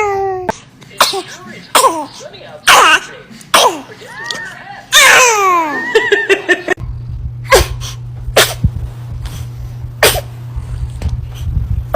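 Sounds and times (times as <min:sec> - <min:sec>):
baby sneezing: 0:01.0 - 0:03.9, 0:07.5 - 0:08.6, 0:10.0 - 0:10.3
steady low hum: 0:04.7 - 0:11.9.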